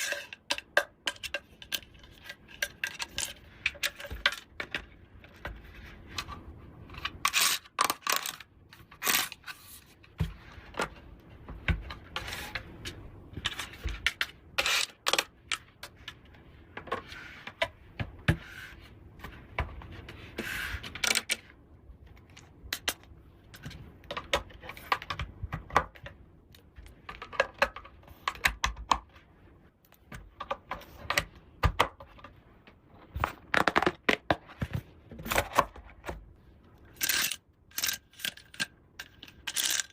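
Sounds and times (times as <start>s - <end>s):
plastic pieces scraping: 0.0s - 17.6s, 36.8s - 39.9s
plastic toy pieces clicking: 36.9s - 39.9s.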